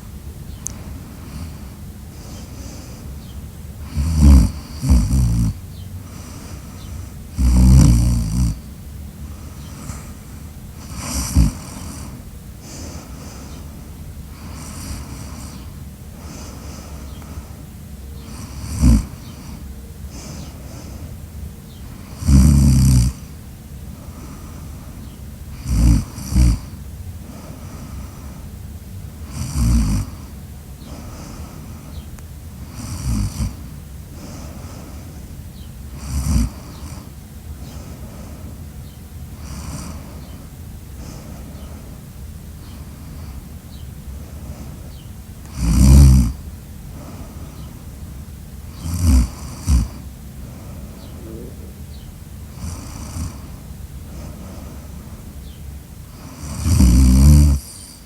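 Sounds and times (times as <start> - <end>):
loud snoring: 3.8 - 8.7, 10.8 - 13.6, 14.3 - 17.4, 18.2 - 21.0, 21.9 - 23.4, 25.5 - 28.4, 29.2 - 31.6, 32.6 - 35.1, 35.9 - 38.4, 39.4 - 40.3, 45.4 - 47.4, 48.7 - 51.9, 52.5 - 54.8, 56.1 - 58.0.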